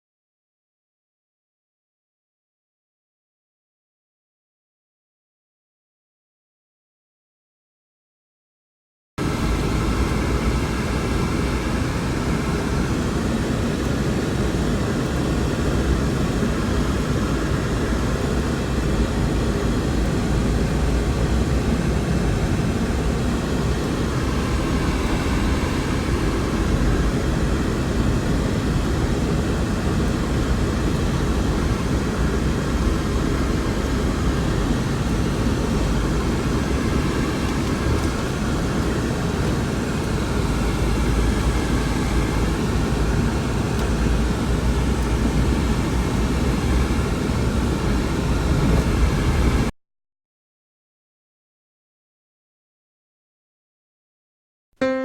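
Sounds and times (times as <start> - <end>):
strong wind roaring: 9.2 - 49.7.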